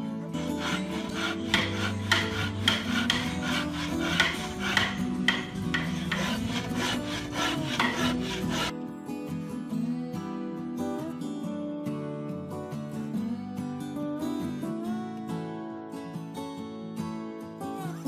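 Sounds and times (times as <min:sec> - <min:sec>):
guitar music: 0:00.0 - 0:18.0
hand tool scraping wood: 0:00.4 - 0:08.7.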